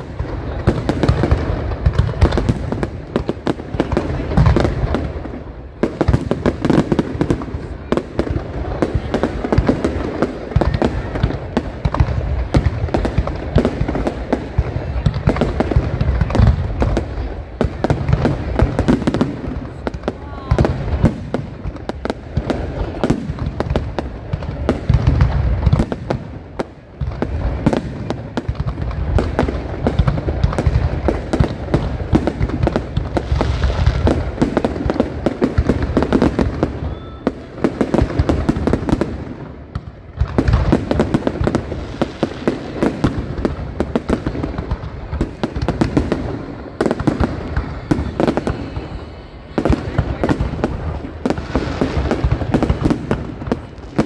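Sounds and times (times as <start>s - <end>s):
fireworks crackling: 0.0s - 54.0s
fireworks shells booming: 0.0s - 54.0s.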